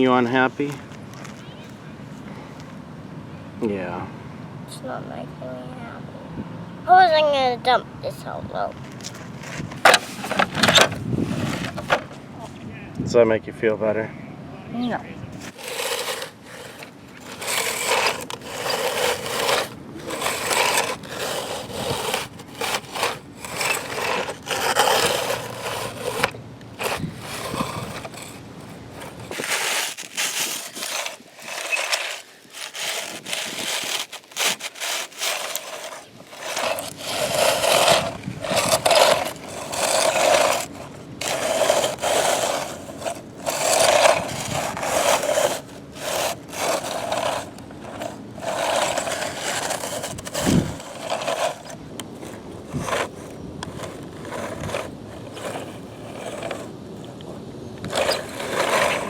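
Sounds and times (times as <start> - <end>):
toy scraping in dirt: 0.0 - 2.6, 7.6 - 12.2, 15.3 - 59.0.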